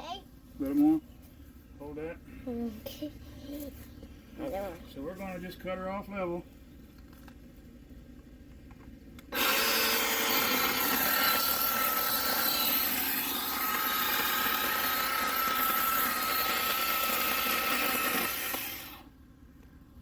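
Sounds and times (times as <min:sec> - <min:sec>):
electric chainsaw cutting wood: 0:09.3 - 0:19.1.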